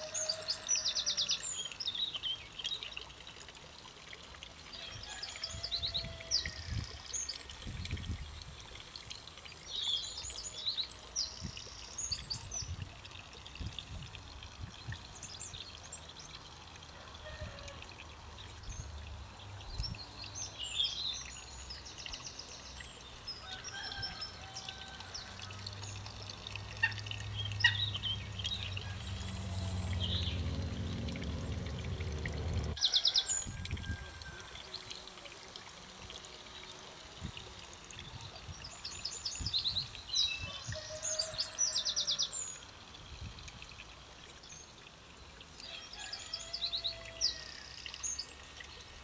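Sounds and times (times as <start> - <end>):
songbirds singing and chirping: 18.4 - 34.8, 38.0 - 42.8
low rumble: 27.9 - 32.8.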